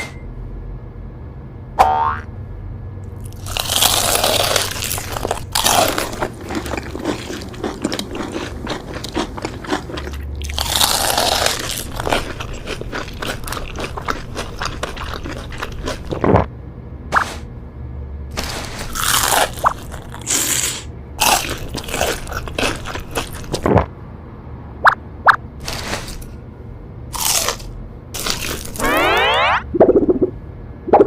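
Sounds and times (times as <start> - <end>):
crackly bites of fried food: 3.1 - 16.4, 18.4 - 23.7, 27.2 - 28.8
rapid crunching chews: 3.1 - 16.5, 18.3 - 23.8, 25.6 - 26.3, 27.1 - 28.9.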